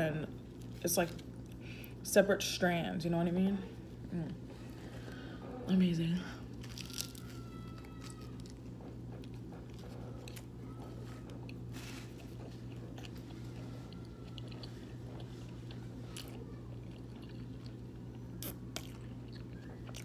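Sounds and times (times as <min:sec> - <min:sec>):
steady low hum: 0:00.0 - 0:20.0
chewing and biting pizza: 0:06.5 - 0:20.0
crust crunching: 0:06.6 - 0:10.5.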